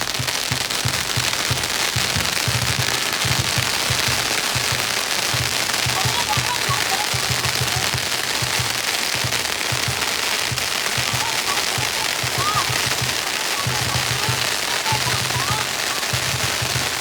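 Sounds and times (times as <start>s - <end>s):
deep drumbeats: 0.0s - 17.0s
firecrackers crackling: 0.0s - 17.0s.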